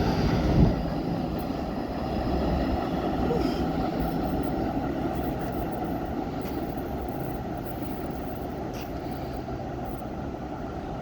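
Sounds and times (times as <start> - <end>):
subway train rumbling on track: 0.0 - 11.0.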